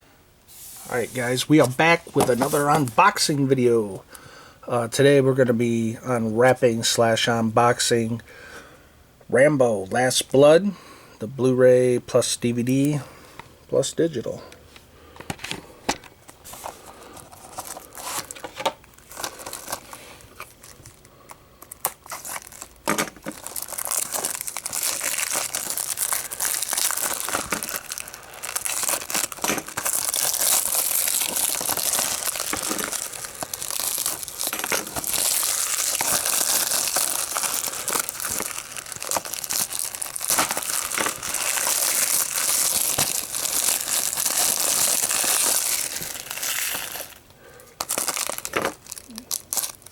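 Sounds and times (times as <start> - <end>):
plastic wrap crackling and crinkling: 0.7 - 4.0, 15.3 - 49.9.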